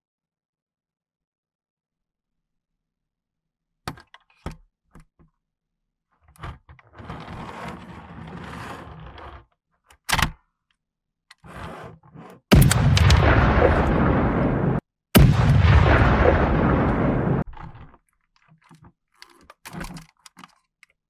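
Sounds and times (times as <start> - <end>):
plastic toys clicking and knocking: 17.8 - 21.0.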